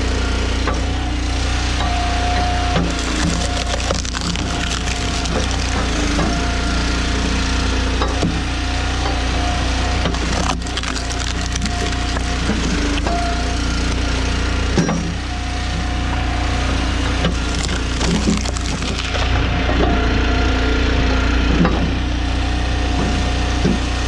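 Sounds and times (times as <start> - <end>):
log splitter engine running: 0.0 - 24.0
wood cracking and splintering: 2.8 - 7.3, 9.9 - 14.4, 17.2 - 19.3.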